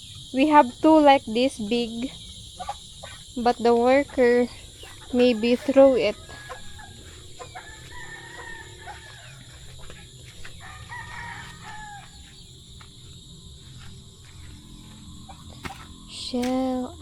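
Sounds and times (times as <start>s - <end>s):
chickens clucking: 0.8s - 12.6s, 13.8s - 16.0s
rooster crowing: 4.9s - 12.6s.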